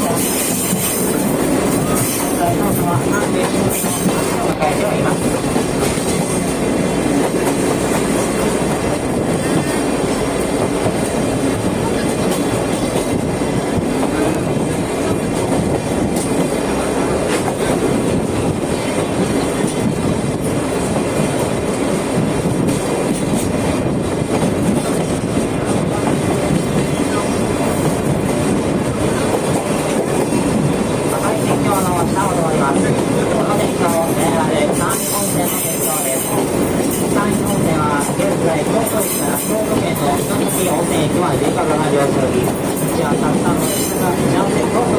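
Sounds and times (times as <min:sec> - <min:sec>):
train wheels rumbling on rails: 0:00.0 - 0:44.9.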